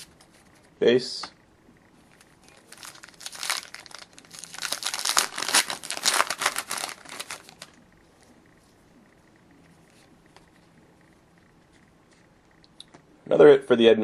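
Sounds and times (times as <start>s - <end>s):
plastic wrapper crinkling: 2.1s - 7.8s.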